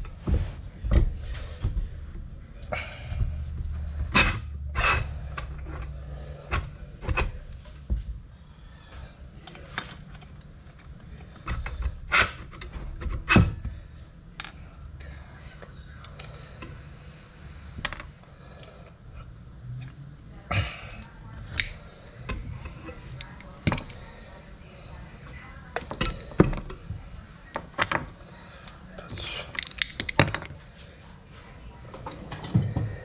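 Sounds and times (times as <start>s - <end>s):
low steady hum: 0.0s - 33.0s
tools and metal parts knocking: 21.6s - 24.0s, 29.5s - 30.6s.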